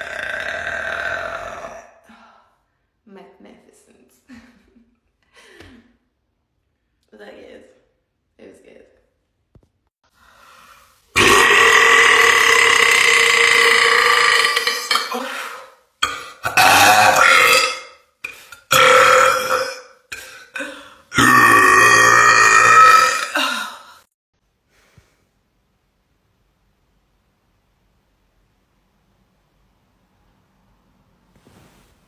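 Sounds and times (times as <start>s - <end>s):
woman burping: 0.0s - 2.2s, 11.2s - 24.0s.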